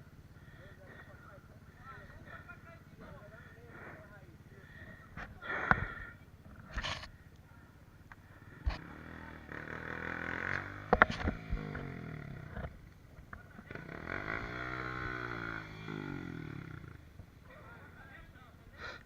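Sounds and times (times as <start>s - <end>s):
motorcycle engine revving: 7.9s - 18.1s.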